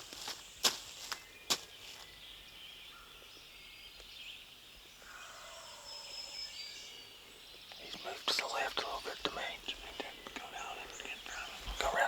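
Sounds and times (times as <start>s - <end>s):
sharp footsteps or cracks: 0.0s - 2.0s
small birds chirping: 0.0s - 12.0s.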